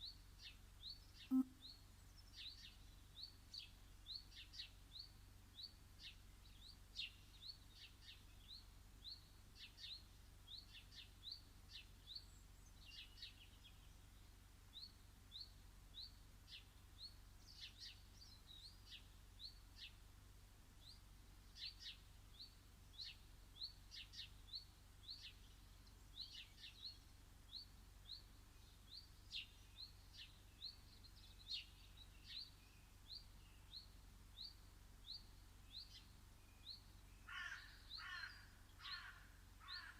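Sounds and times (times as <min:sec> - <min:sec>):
sharp bird calls: 0:01.2 - 0:01.8, 0:36.7 - 0:39.9.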